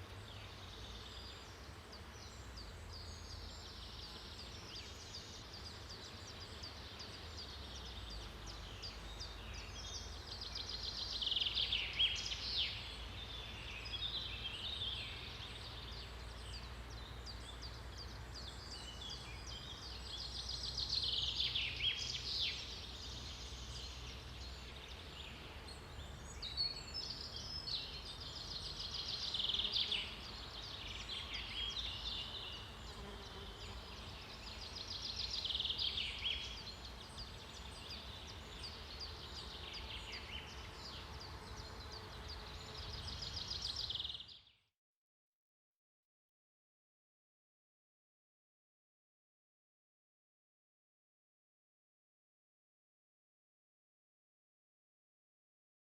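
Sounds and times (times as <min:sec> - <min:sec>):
songbirds trilling and chirping: 0:00.0 - 0:44.6.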